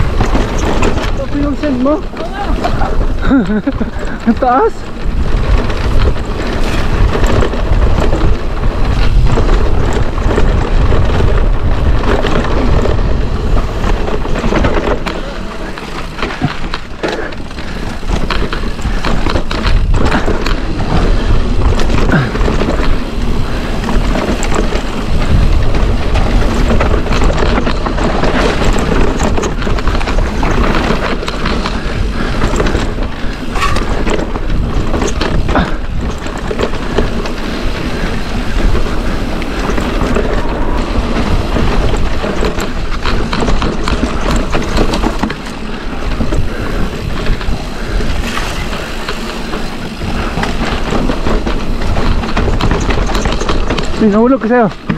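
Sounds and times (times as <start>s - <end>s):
bike knocks and rattles: 0.0s - 54.9s
tyres rumbling over rock: 0.0s - 54.9s
wind on microphone: 0.0s - 54.9s.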